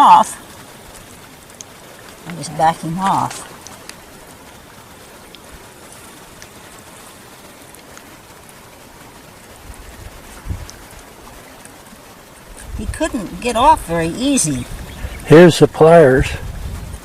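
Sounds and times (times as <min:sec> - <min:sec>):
hiss of moving water: 0:00.0 - 0:17.0
faint ticks: 0:00.5 - 0:02.5, 0:03.3 - 0:12.8.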